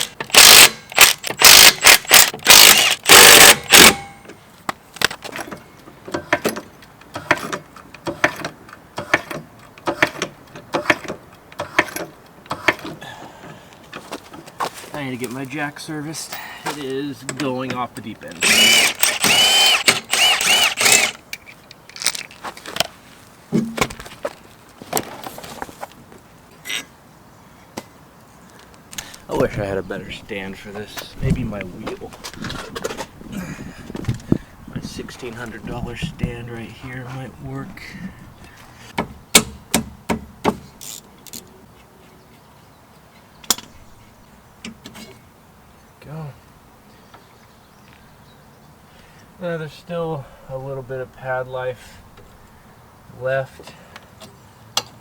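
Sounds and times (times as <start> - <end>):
tools clicking and knocking: 5.0 - 13.0, 17.3 - 22.9.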